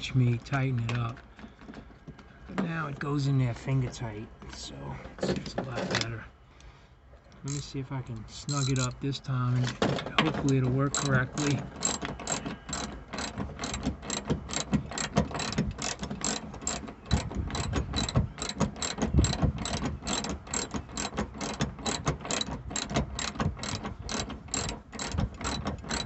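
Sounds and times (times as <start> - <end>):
ratchet wrench clicking: 7.5 - 7.7, 8.5 - 8.9, 10.4 - 26.0.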